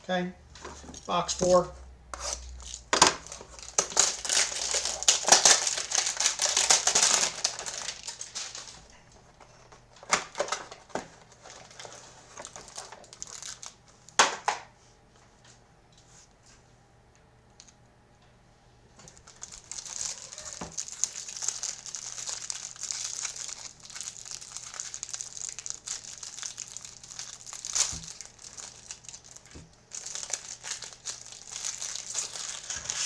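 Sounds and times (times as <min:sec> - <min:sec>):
packaging crinkling and tearing: 0:02.2 - 0:14.6, 0:19.0 - 0:33.0.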